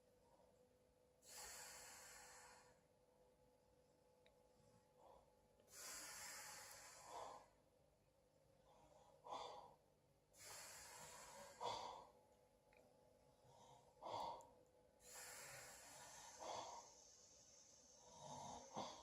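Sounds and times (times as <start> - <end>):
person snoring softly: 5.7 - 7.6, 10.4 - 12.1, 13.5 - 19.0.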